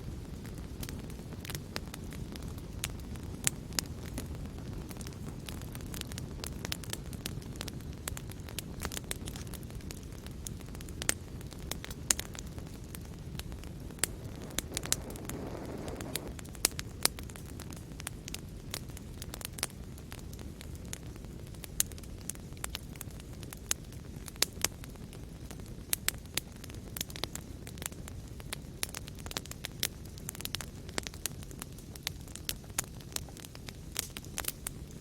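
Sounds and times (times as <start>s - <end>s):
wood fire crackling: 0.0s - 35.0s.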